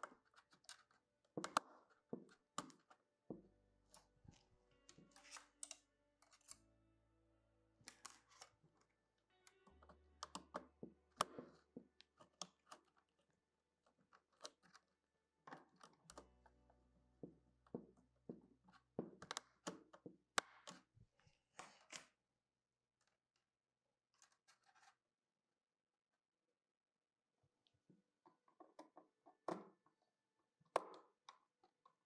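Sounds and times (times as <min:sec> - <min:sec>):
hands clicking and tapping wires: 0:00.0 - 0:06.6, 0:07.8 - 0:16.4, 0:17.2 - 0:22.1, 0:27.9 - 0:32.0
quiet background music: 0:01.4 - 0:12.9, 0:15.4 - 0:20.6.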